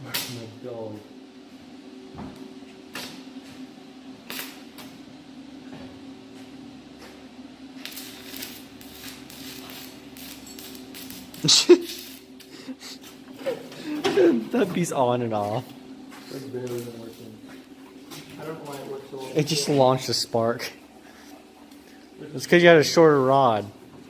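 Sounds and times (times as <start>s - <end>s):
electrical hum: 0.0s - 24.0s
arc welder sputtering and crackling: 2.8s - 5.0s, 7.0s - 23.8s.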